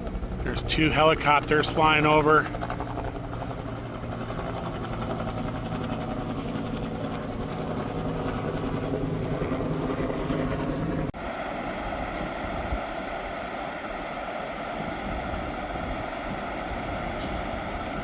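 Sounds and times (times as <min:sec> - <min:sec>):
helicopters droning overhead: 0:00.0 - 0:18.0
rushing water: 0:11.2 - 0:18.0.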